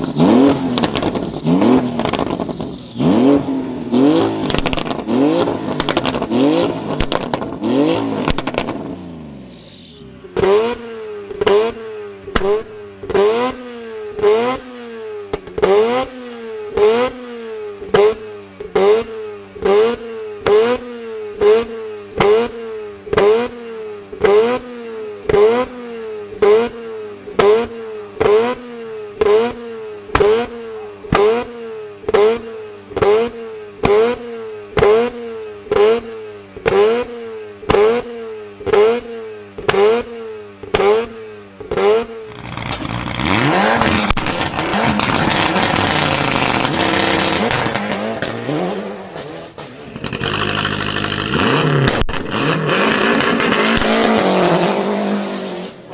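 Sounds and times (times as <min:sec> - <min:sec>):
exhaust pops: 0:00.0 - 0:02.8, 0:04.4 - 0:08.9, 0:12.3 - 0:13.2, 0:30.1 - 0:31.5, 0:39.6 - 0:48.5, 0:49.1 - 0:54.3
car engine revving: 0:00.0 - 0:55.9.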